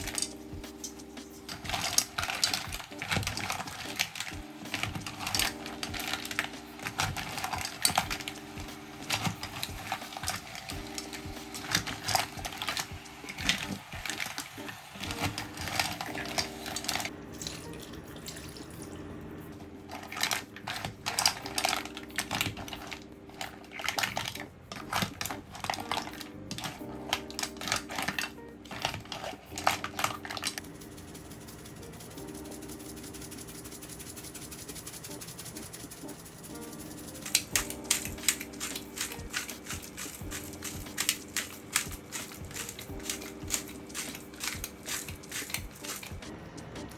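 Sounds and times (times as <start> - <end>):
soft background music: 0.0 - 46.9
utensil clinking on shells: 34.2 - 46.2.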